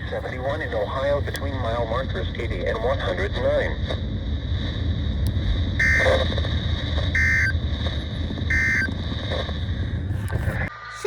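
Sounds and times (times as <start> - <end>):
radio hum and hiss: 0.0 - 4.2, 5.2 - 11.0
digital data tone bursts: 5.8 - 6.3, 7.2 - 7.6, 8.5 - 8.9.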